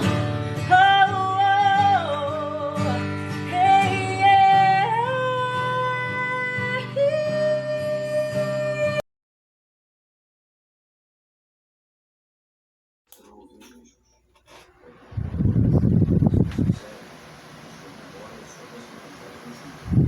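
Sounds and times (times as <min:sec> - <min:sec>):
plucked guitar: 0:00.0 - 0:09.0.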